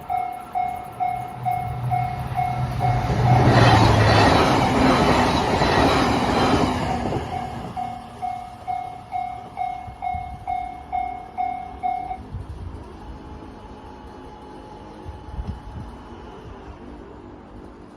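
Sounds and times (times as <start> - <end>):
railroad crossing bell: 0.0 - 12.3
train passing: 0.0 - 17.9.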